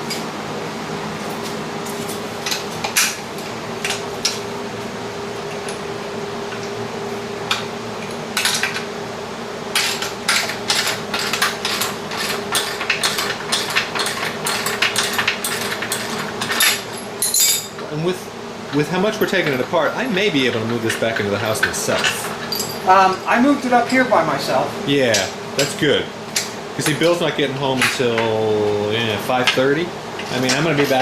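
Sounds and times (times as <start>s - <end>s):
steady low hum: 0.0s - 31.0s
metal tools clinking: 16.6s - 17.8s, 22.0s - 22.9s.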